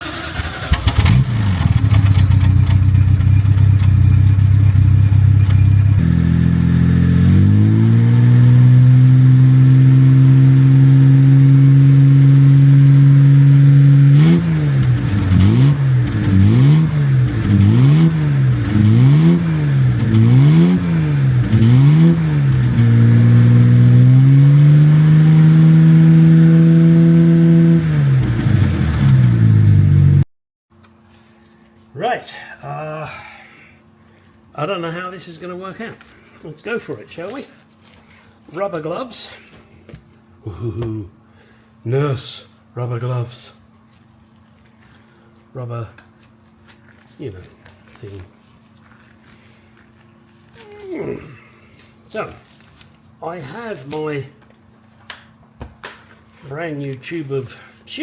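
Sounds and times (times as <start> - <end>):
car engine idling and revving: 0.0 - 30.2.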